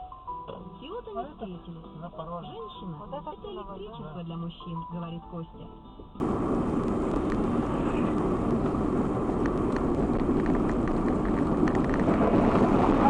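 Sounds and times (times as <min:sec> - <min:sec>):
car road and engine noise: 0:06.2 - 0:13.0
faint clicks: 0:09.4 - 0:12.2.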